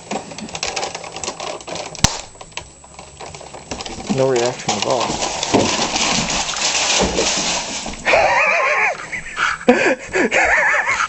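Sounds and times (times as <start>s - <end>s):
noisy rustle: 0.0s - 9.5s.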